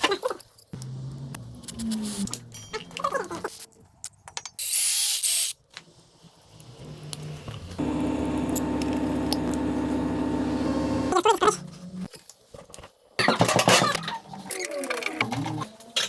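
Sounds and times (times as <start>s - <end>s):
electric machine hum: 7.6s - 11.2s.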